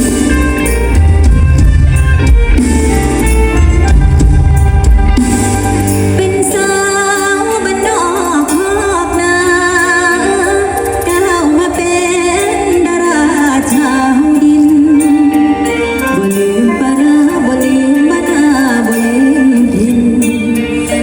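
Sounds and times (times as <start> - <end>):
live band music: 0.0 - 21.0
woman singing: 6.2 - 21.0.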